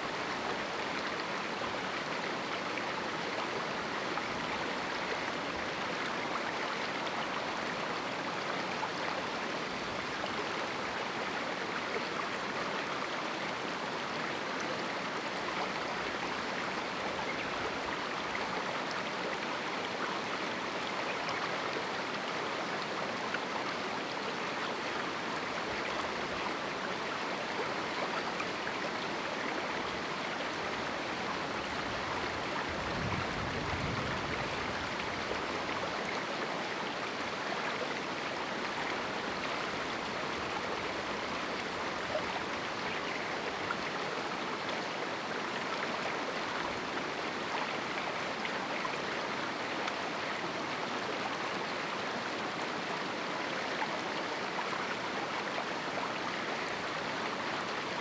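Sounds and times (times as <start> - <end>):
river water rushing: 0.0 - 58.0.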